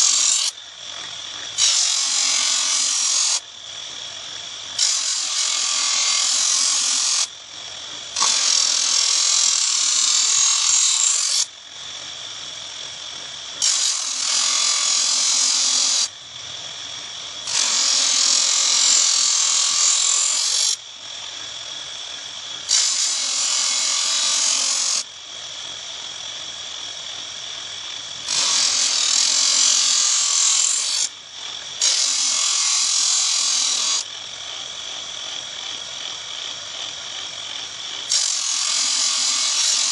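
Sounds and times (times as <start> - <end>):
knife blade grinding on abrasive: 0.0 - 3.4, 4.8 - 7.3, 8.2 - 11.5, 13.6 - 16.1, 17.4 - 20.8, 22.6 - 25.1, 28.2 - 34.0, 38.0 - 39.9
knife sharpening machine whine: 0.0 - 39.9.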